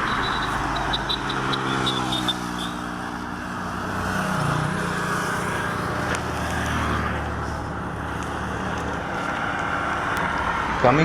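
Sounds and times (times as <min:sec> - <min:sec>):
vehicle engine running: 0:00.0 - 0:10.4.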